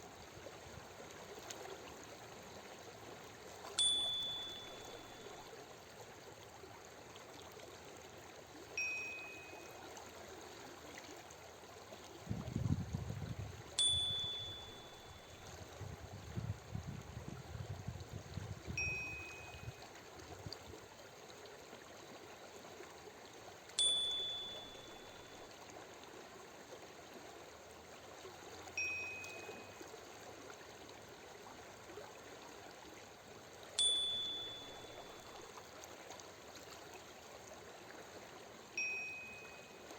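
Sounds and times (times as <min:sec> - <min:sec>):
flowing water: 0:00.0 - 0:39.9
short two-tone chime: 0:03.8 - 0:05.4, 0:08.8 - 0:09.8, 0:13.8 - 0:15.6, 0:18.8 - 0:19.8, 0:23.8 - 0:25.5, 0:28.8 - 0:29.8, 0:33.8 - 0:35.5, 0:38.8 - 0:39.9.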